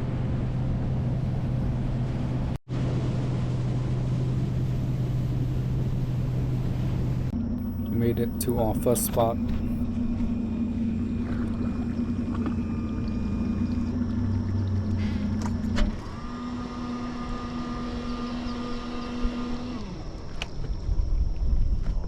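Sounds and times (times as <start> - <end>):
outboard engine running: 0.0 - 20.8
electric motor whine: 4.4 - 20.8.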